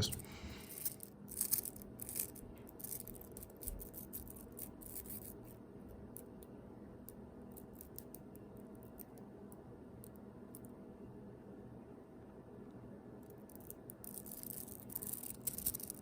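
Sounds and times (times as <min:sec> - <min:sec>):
magnet balls clicking together: 0:13.5 - 0:16.0.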